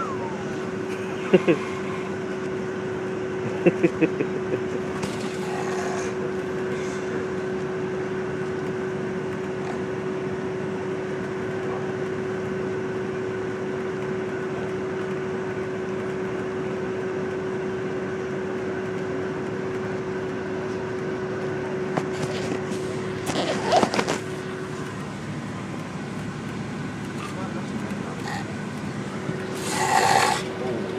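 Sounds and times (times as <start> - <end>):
sound with bending pitch: 0.0 - 0.8
bus interior hum: 0.0 - 30.9
bus rumble: 0.0 - 30.9.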